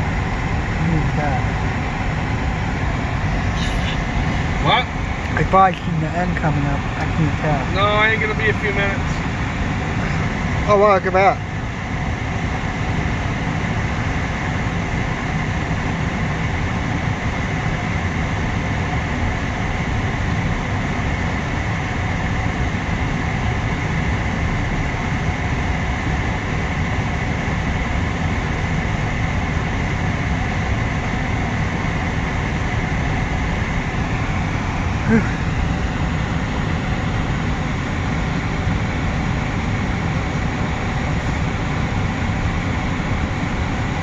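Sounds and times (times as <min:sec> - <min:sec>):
freight train rumbling past: 0:00.0 - 0:10.7
high whine of train wheels: 0:00.0 - 0:44.0.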